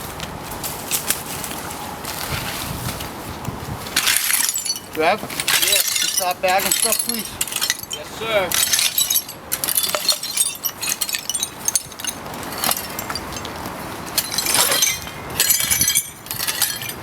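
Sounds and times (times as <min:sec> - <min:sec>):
clinking and clattering debris: 0:03.9 - 0:17.0.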